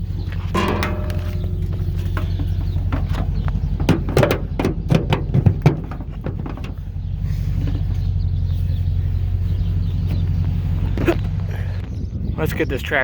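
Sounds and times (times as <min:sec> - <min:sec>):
engine running: 0:00.0 - 0:12.1
clanks and knocks: 0:00.3 - 0:08.0.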